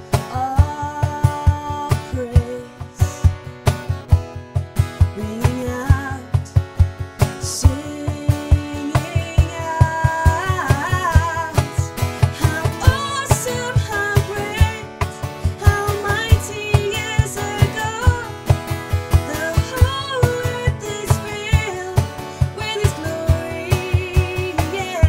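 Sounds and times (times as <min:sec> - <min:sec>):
woman singing: 0:00.0 - 0:03.5, 0:05.0 - 0:25.0
acoustic guitar strumming: 0:00.0 - 0:25.0.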